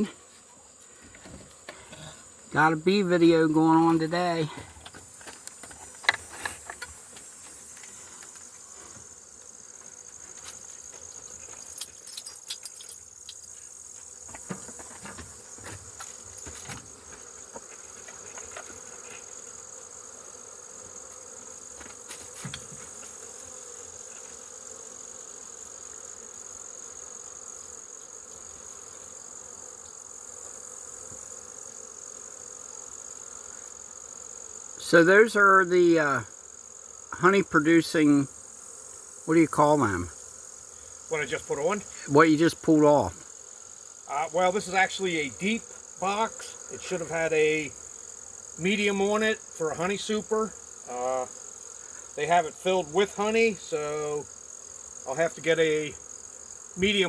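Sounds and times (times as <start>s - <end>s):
honeybees humming: 0.0s - 57.0s
insect buzzing drone: 0.0s - 57.0s
hive frames clicking and knocking: 4.0s - 19.7s, 20.9s - 24.4s.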